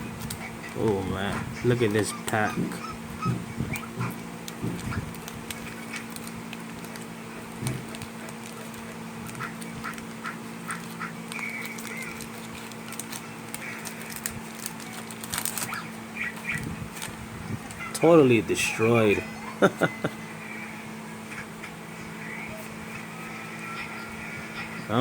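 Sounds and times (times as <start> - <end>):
steady low hum: 0.0 - 25.0
foil wrapper crinkling: 0.2 - 19.2.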